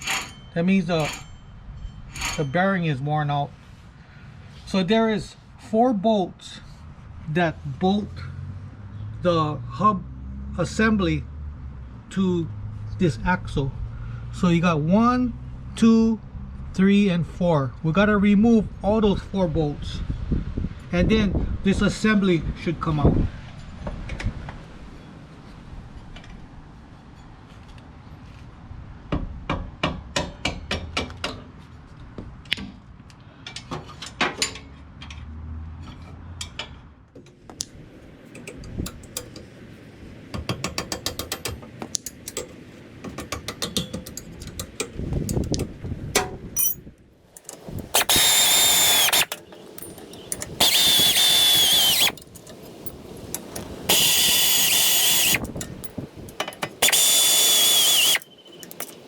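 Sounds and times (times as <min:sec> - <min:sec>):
air ratchet whining: 0:00.0 - 0:01.4, 0:02.0 - 0:02.4, 0:47.4 - 0:59.0
metallic ratcheting clicks: 0:47.4 - 0:52.6, 0:53.3 - 0:59.0.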